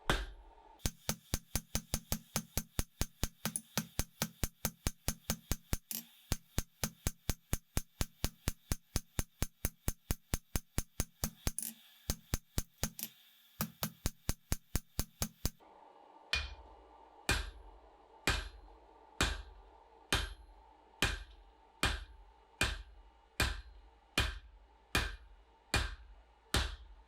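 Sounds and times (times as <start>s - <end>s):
hammer blows on hot steel: 0.8s - 15.6s.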